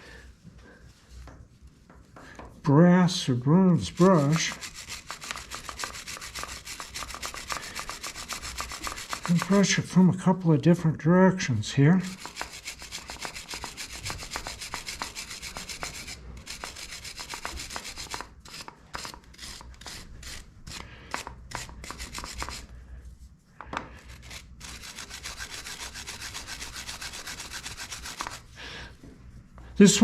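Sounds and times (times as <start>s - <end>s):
wire brush scrubbing screws: 3.9s - 9.8s.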